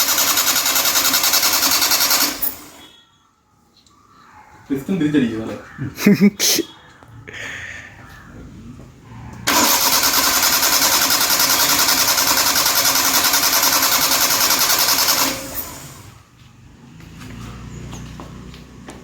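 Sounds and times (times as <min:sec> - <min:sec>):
starter motor cranking engine: 0:00.0 - 0:02.8, 0:09.4 - 0:16.2.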